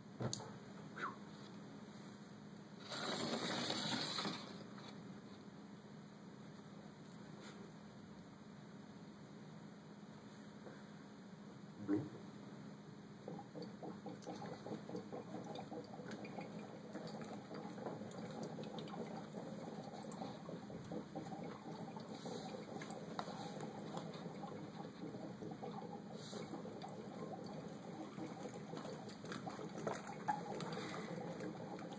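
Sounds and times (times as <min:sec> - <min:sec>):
water boiling and bubbling: 0:13.2 - 0:31.9.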